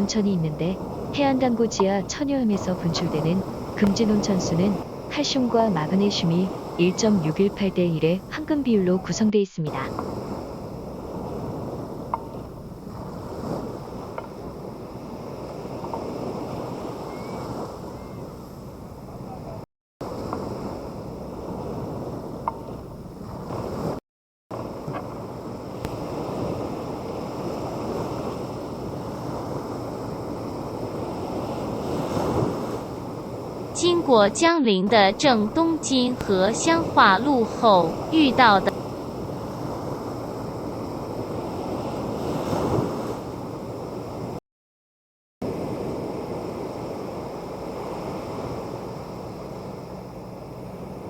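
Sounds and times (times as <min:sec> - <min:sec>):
sea surf: 0:00.0 - 0:44.4, 0:45.4 - 0:51.0
wind on microphone: 0:09.8 - 0:24.0, 0:24.6 - 0:34.4, 0:35.1 - 0:44.4.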